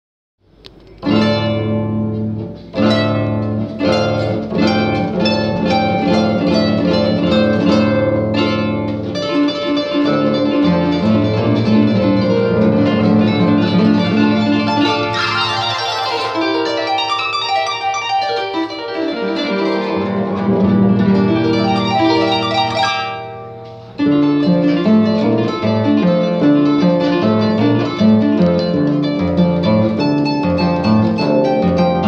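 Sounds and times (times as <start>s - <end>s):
harp playing fast polka: 2.8s - 23.5s.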